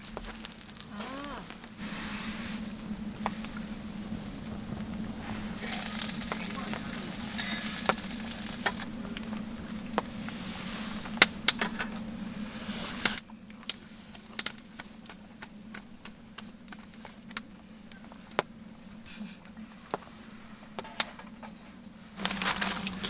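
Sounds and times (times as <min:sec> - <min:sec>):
meat sizzling on a grill: 0:00.0 - 0:13.2
fire crackling and popping: 0:00.0 - 0:18.6, 0:22.1 - 0:23.0
steady low hum: 0:00.0 - 0:23.0.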